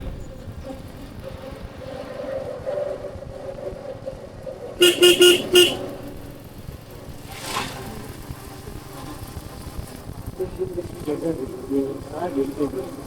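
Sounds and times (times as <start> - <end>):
vehicle engine running: 0.0 - 13.0
vehicle horn honking: 4.8 - 6.4.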